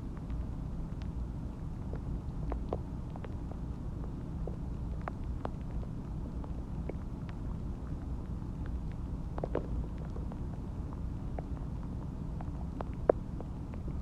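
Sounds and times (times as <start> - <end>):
stomach gurgling: 0.0 - 14.0.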